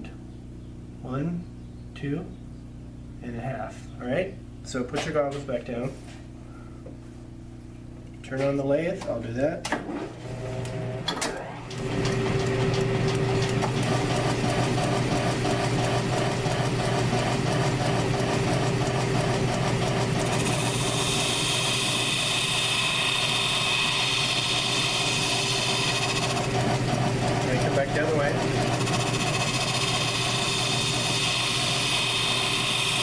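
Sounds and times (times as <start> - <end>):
lathe motor humming: 10.3 - 33.0.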